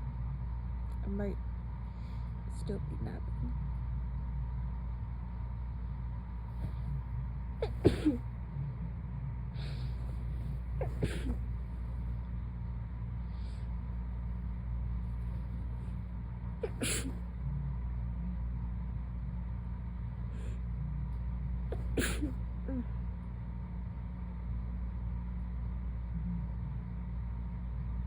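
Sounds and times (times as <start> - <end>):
low hum: 0.0 - 28.0
person sneezing: 7.6 - 8.2, 10.8 - 11.5, 16.6 - 17.3, 21.8 - 22.8.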